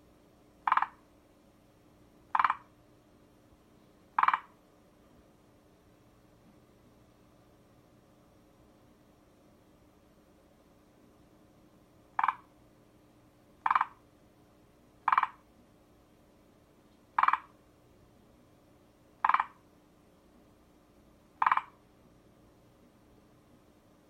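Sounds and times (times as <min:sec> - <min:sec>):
tree frog calling: 0:00.6 - 0:01.0, 0:02.3 - 0:02.7, 0:04.2 - 0:04.6, 0:12.1 - 0:12.5, 0:13.6 - 0:14.0, 0:15.0 - 0:15.4, 0:17.1 - 0:17.6, 0:19.2 - 0:19.6, 0:21.4 - 0:21.8.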